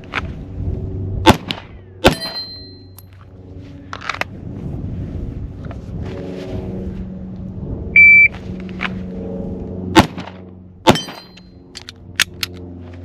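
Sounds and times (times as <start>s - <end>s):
handgun shots: 1.3s - 2.5s
shot timer beep: 8.0s - 8.3s.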